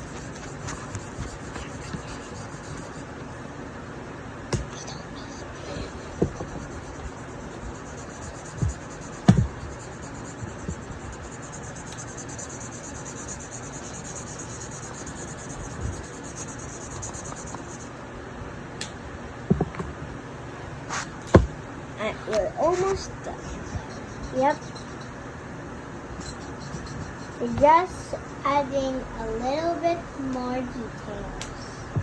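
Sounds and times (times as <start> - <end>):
pen scratching on paper: 0.0 - 3.2, 4.6 - 17.9, 22.3 - 25.0.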